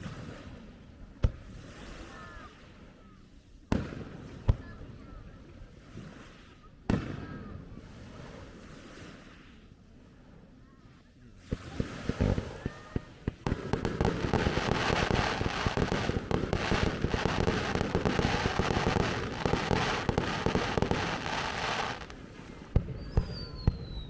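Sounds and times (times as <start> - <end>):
fireworks crackling bangs: 11.4 - 24.0.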